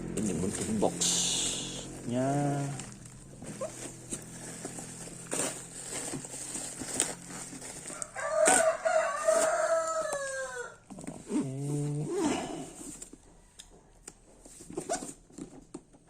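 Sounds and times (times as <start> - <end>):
handling clicks and rustles: 1.9 - 10.2
rooster crowing: 7.8 - 10.8.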